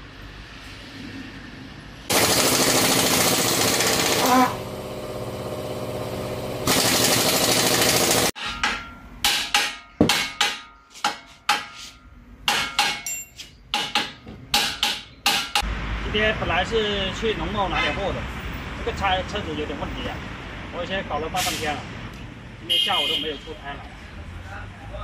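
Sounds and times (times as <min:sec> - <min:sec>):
power tool whirring: 0:02.1 - 0:08.3.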